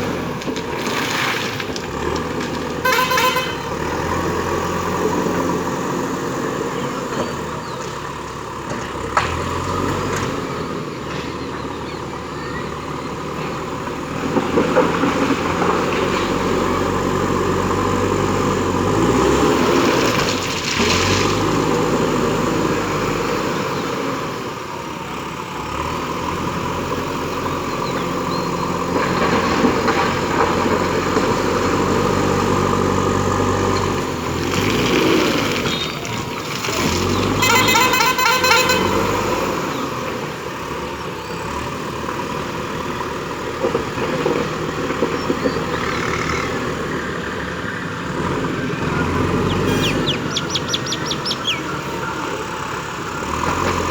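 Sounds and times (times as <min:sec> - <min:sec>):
diesel engine under load: 0:00.0 - 0:53.9
short horn-like tone: 0:02.8 - 0:03.7, 0:37.4 - 0:39.1, 0:49.7 - 0:50.0.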